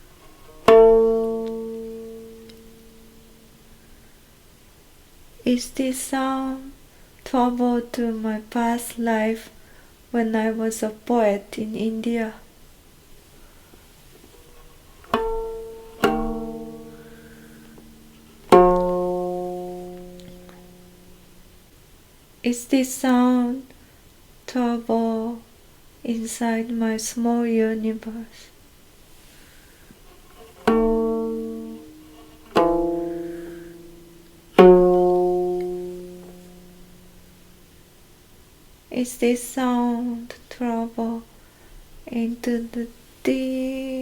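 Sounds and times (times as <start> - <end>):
plucked stringed instrument: 0.0 - 4.1, 14.2 - 21.7, 29.9 - 38.1.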